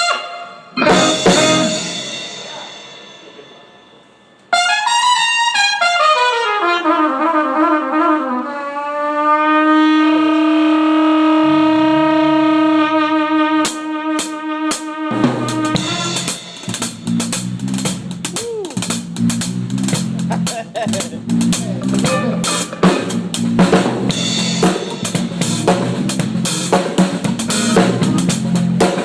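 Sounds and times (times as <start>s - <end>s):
trumpet playing: 0.0s - 2.5s, 4.5s - 17.2s, 21.3s - 25.9s
full band playing: 0.0s - 3.8s, 10.3s - 29.0s
bass notes: 0.8s - 2.4s, 10.2s - 14.2s, 15.1s - 29.0s
sharp drum hits: 0.8s - 4.0s, 11.4s - 29.0s.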